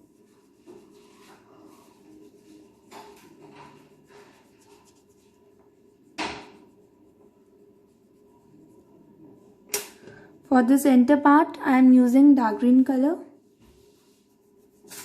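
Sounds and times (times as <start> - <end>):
crayon scratching on paper: 0.0 - 9.1
sharp knock: 6.2 - 6.6.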